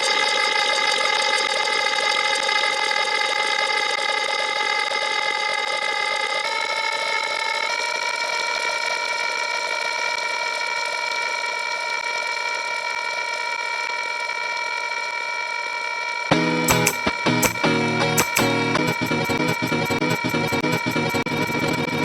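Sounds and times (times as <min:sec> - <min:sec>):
buzzy electronic tone: 0:16.3 - 0:22.0
music with punchy beats: 0:16.4 - 0:22.0.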